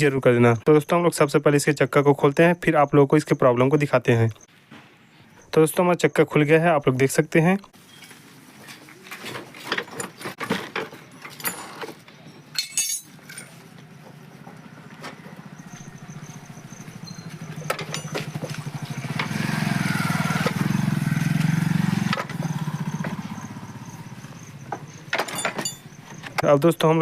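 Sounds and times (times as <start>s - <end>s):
metal clinks and knocks: 8.7s - 19.3s, 24.3s - 26.4s
motorcycle engine running: 13.8s - 26.3s.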